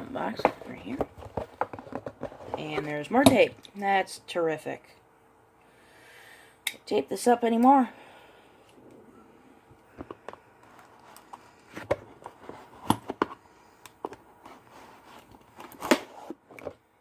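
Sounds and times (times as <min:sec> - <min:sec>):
tape rustling: 0:00.0 - 0:03.1.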